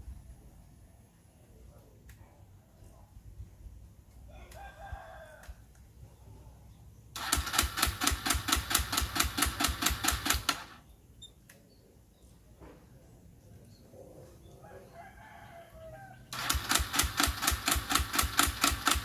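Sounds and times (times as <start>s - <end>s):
motorcycle engine cranking clatter: 7.2s - 10.8s, 16.3s - 19.0s.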